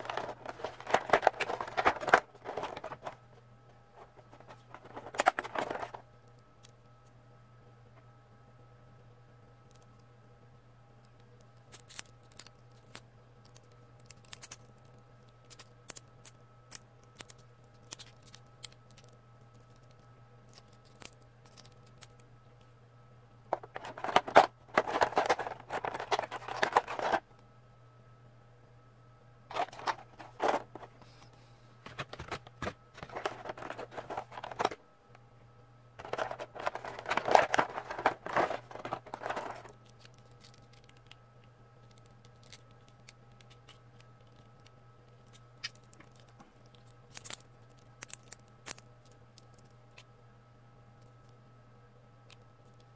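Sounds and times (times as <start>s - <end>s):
plastic packaging crinkling: 0.0s - 3.2s, 23.6s - 27.2s, 29.5s - 31.0s, 31.9s - 34.8s, 36.0s - 41.2s
low electrical hum: 0.0s - 52.9s.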